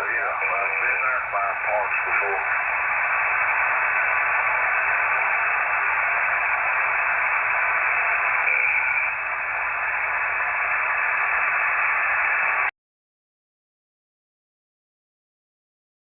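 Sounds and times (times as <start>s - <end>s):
radio static hiss: 0.0s - 12.7s.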